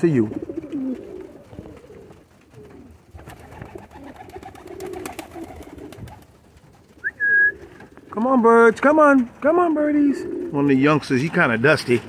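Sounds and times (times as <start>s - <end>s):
pigeons cooing softly: 0.0s - 8.2s, 9.7s - 11.0s.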